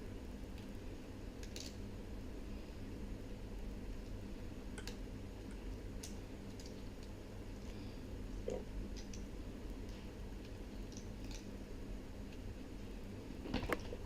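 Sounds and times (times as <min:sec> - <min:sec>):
steady low hum: 0:00.0 - 0:14.0
small parts clicking: 0:01.4 - 0:01.8, 0:06.0 - 0:07.7, 0:08.9 - 0:11.5.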